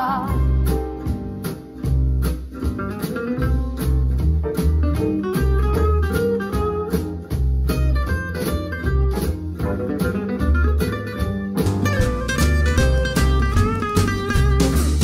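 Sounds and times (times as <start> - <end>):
drums steady beat: 0.0 - 15.0
guitar: 0.0 - 15.0
heavy bass line: 8.8 - 15.0.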